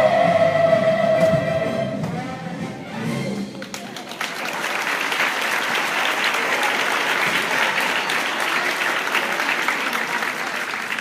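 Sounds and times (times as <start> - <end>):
audience applauding: 3.5 - 11.0.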